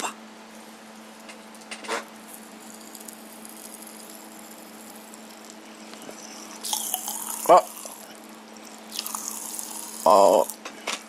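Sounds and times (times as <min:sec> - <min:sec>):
steady low hum: 0:00.0 - 0:11.0
faint light crackles: 0:01.6 - 0:10.6.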